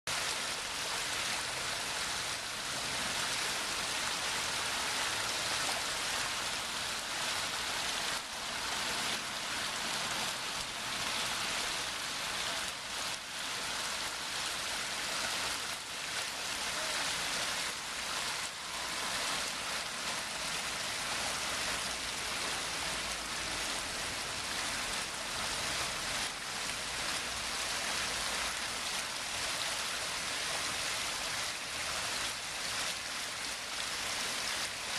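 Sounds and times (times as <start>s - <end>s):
waterfall splashing into pond: 0.1s - 34.9s.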